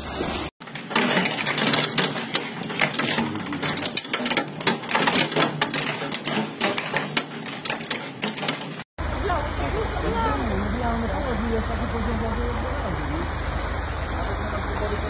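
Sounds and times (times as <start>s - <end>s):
hailstones pelting hard surface: 0.6s - 8.9s.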